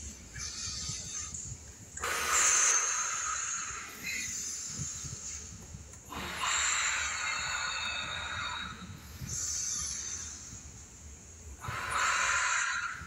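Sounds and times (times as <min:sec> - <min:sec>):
person breathing: 0:02.0 - 0:10.7, 0:11.6 - 0:13.0.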